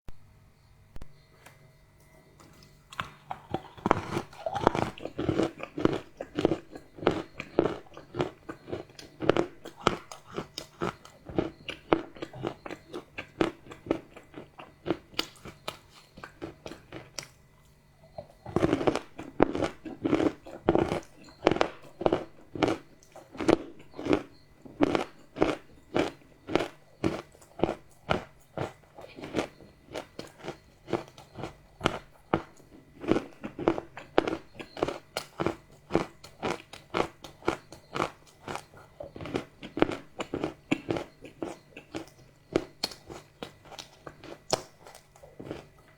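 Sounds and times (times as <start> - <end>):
chewing crunchy chocolate: 2.0 - 45.9.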